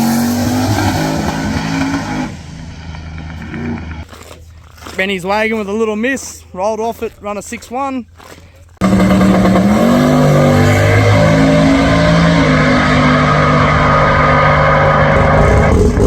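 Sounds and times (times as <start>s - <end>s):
engine at full throttle: 0.0s - 4.0s, 8.8s - 16.0s.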